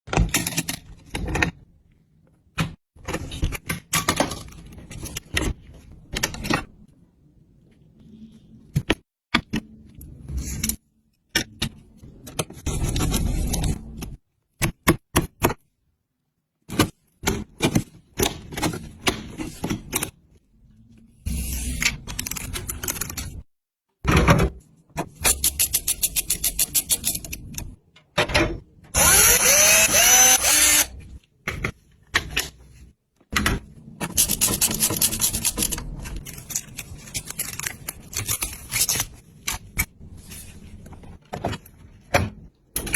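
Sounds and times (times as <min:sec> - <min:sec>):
computer parts clicking and knocking: 0:33.3 - 0:39.9.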